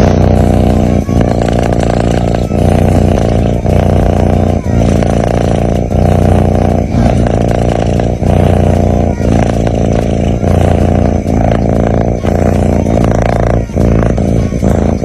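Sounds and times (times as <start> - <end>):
cat snoring: 0.0 - 15.0.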